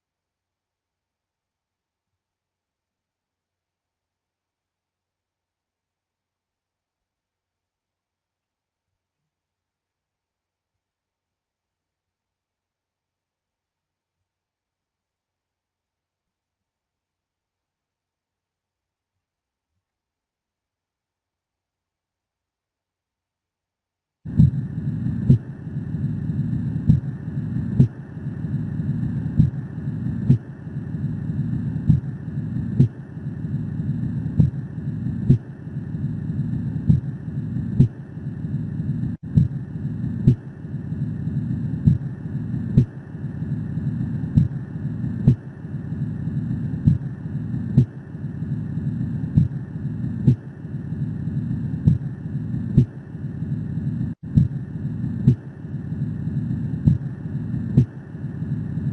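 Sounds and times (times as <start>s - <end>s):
heartbeat thuds: 24.3s - 40.6s, 41.6s - 43.1s, 44.1s - 45.6s, 46.4s - 48.1s, 49.2s - 50.6s, 51.7s - 53.1s, 54.2s - 55.6s, 56.8s - 58.1s
low rushing noise: 24.3s - 58.9s.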